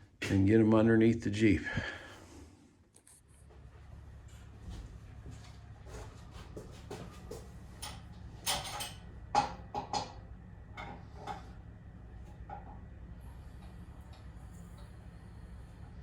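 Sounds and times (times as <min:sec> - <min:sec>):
knocks and clatter of objects: 0:06.4 - 0:10.2, 0:10.8 - 0:11.6.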